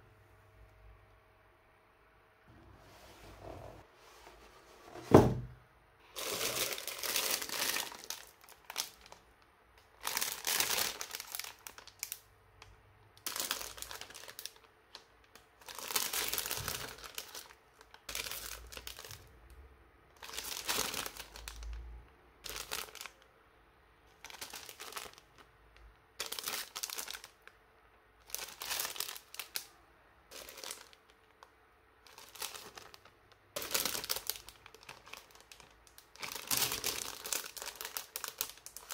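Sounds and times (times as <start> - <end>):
plastic bags rustling: 6.0 - 12.2, 13.2 - 19.4, 20.2 - 21.8, 22.4 - 23.2, 24.1 - 25.5, 26.1 - 27.6, 28.2 - 29.7, 30.3 - 31.4, 32.0 - 38.9.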